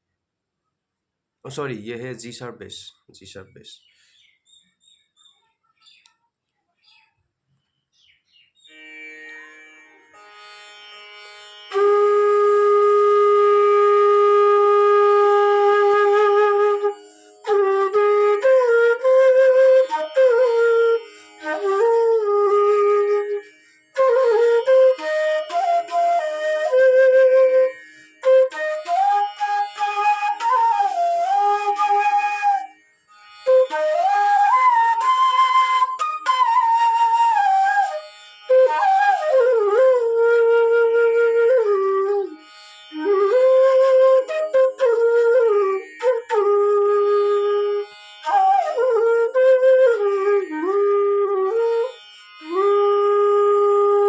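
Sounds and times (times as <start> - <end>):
bass bamboo flute playing: 11.7 - 32.8, 33.4 - 54.0.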